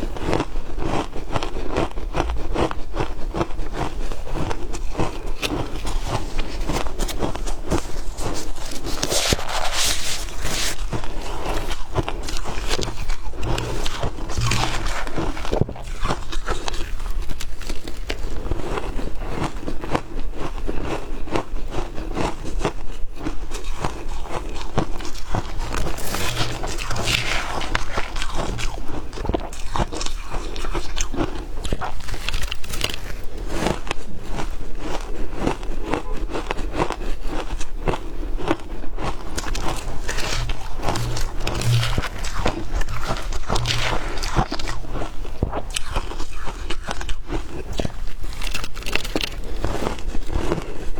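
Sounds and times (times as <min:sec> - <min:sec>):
ice being crunched: 0:05.1 - 0:18.6, 0:25.0 - 0:33.4, 0:39.3 - 0:50.1.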